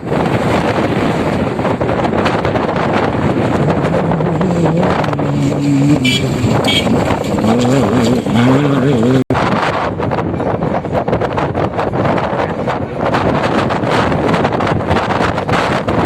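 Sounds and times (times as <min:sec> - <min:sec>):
wind buffeting on microphone: 0:00.0 - 0:16.0
motorcycle engine running: 0:00.1 - 0:09.2.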